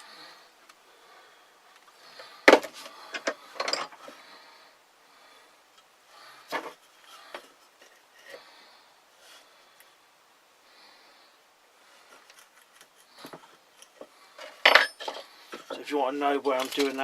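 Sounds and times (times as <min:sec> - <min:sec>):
knocks and clicks of wood and tools: 0:02.2 - 0:04.1, 0:06.5 - 0:08.0, 0:12.2 - 0:15.8.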